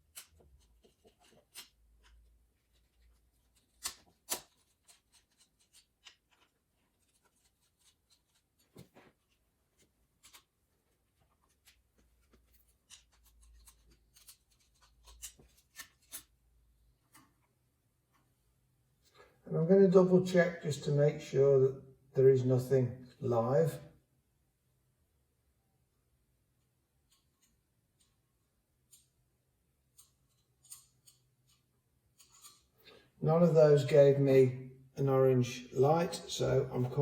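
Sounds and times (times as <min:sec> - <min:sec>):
screwdriver and plastic parts clicking: 0:00.0 - 0:08.4, 0:32.2 - 0:32.7.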